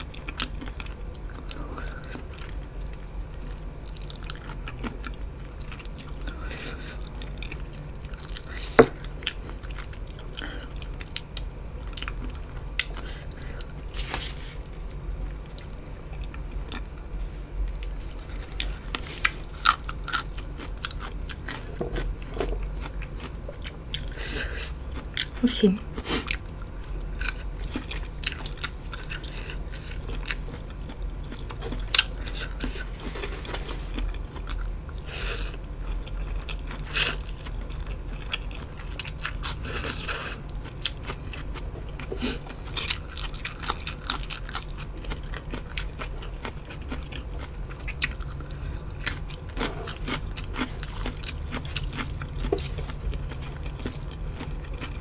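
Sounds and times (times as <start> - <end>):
chewing with crisp crunches: 0.0 - 55.0
low steady hum: 0.0 - 55.0.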